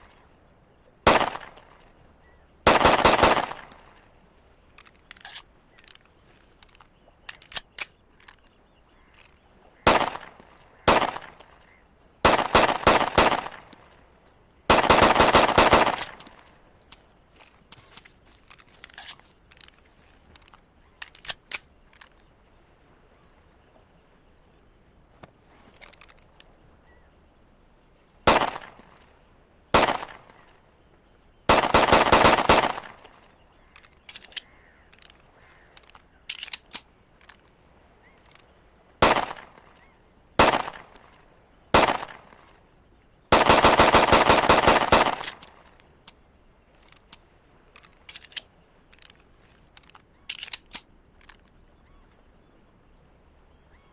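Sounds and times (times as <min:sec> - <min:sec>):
pistol shots: 0:02.7 - 0:03.7, 0:10.9 - 0:11.4, 0:12.2 - 0:13.7, 0:14.7 - 0:16.2, 0:31.5 - 0:33.0, 0:40.4 - 0:40.9, 0:41.7 - 0:42.3, 0:43.3 - 0:45.5
small clicks: 0:04.7 - 0:09.5, 0:15.6 - 0:22.4, 0:25.2 - 0:26.5, 0:31.5 - 0:38.5, 0:43.3 - 0:51.6.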